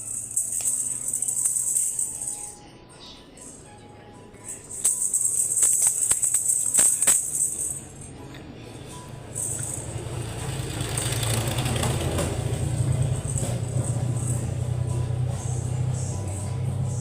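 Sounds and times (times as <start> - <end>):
tambourine-like jingling: 0.0 - 2.6, 4.4 - 8.1, 9.3 - 11.6, 12.4 - 17.0
background music: 0.0 - 17.0.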